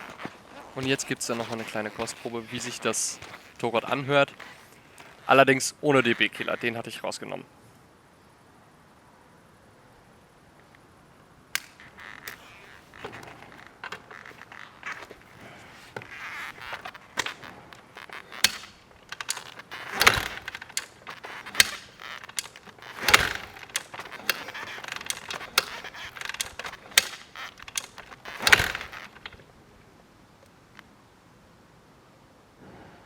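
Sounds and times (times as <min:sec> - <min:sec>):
rasping bursts: 0:00.0 - 0:05.4, 0:11.6 - 0:29.4
mechanical clicks and knocks: 0:11.6 - 0:29.4.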